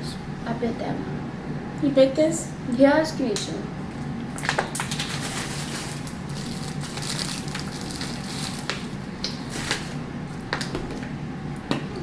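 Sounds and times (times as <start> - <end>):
candy crunching while chewed: 4.4 - 9.9.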